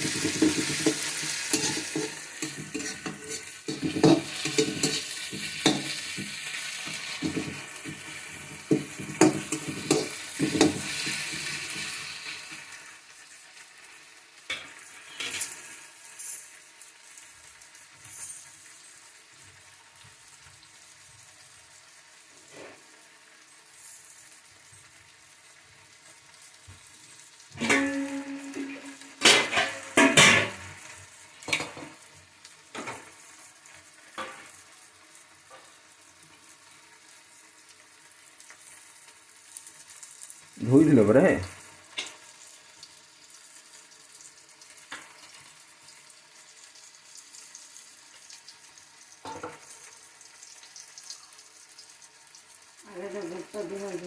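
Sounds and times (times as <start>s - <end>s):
food sizzling in pan: 0.0s - 54.0s
spatula knocking against pan: 8.7s - 10.8s.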